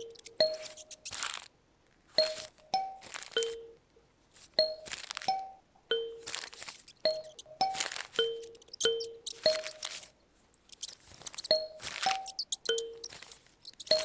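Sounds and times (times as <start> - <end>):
paper rustling: 0.0 - 3.6, 4.2 - 5.4, 6.2 - 14.0.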